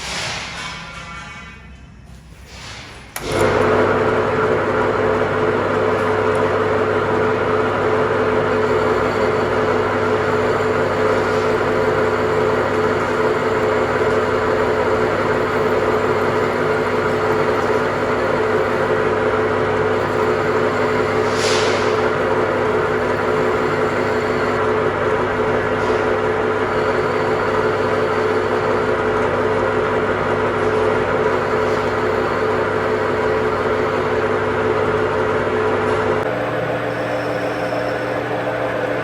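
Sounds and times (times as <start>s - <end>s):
machine humming: 3.1s - 39.0s
brief high hiss: 21.3s - 21.9s.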